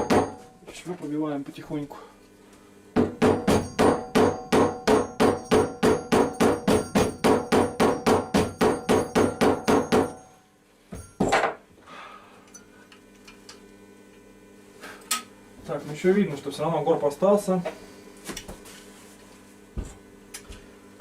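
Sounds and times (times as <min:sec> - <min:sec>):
hammer tapping on sheet steel: 0:03.0 - 0:10.2.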